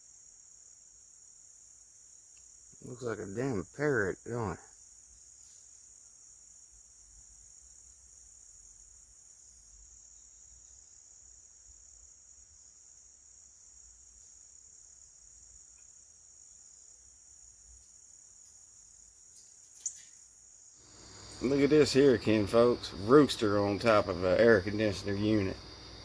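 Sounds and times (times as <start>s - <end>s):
crickets chirring: 0.0s - 26.0s.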